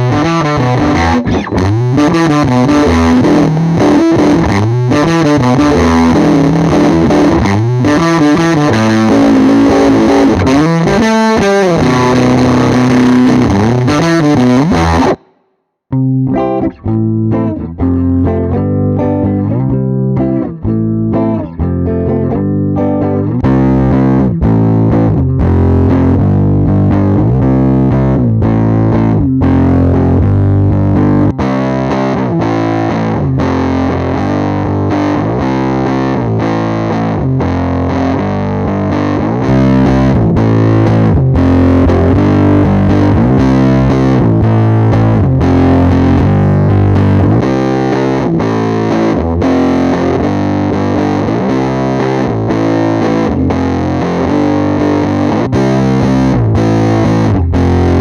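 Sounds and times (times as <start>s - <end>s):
distorted electric guitar: 0.0s - 58.0s.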